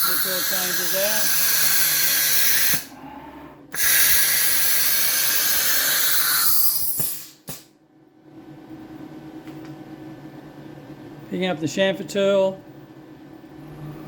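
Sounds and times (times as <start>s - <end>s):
compressed air hissing: 0.0s - 2.9s, 3.8s - 7.7s.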